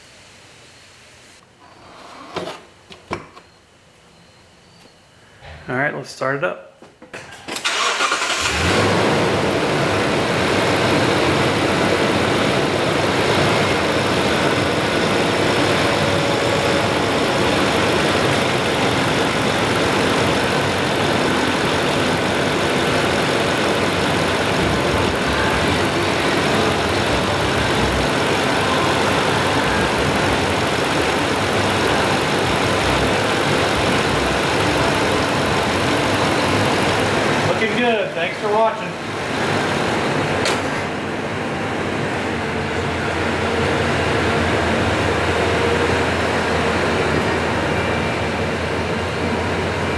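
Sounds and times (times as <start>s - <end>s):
engine starting and idling: 7.2s - 41.4s.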